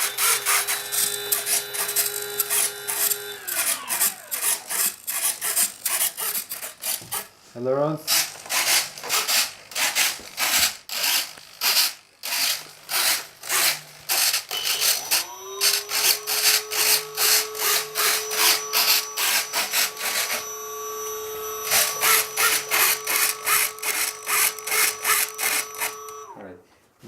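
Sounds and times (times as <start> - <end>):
steady electric whine: 0.0 - 5.0, 13.8 - 26.4
servos buzzing: 0.0 - 7.3, 8.1 - 26.4.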